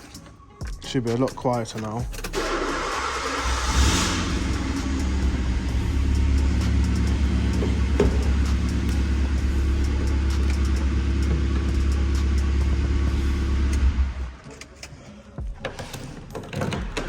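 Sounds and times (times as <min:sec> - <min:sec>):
car engine idling: 0:01.3 - 0:14.4.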